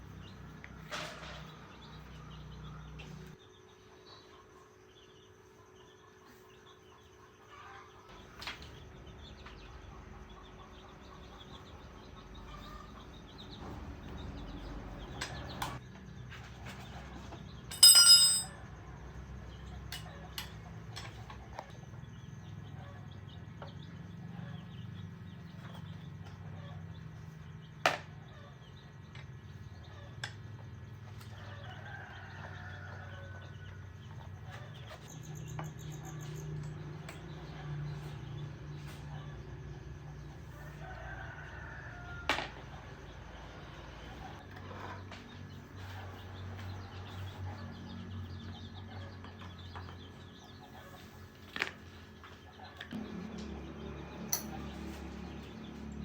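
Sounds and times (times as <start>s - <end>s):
hand tools clinking on metal: 17.7s - 18.6s.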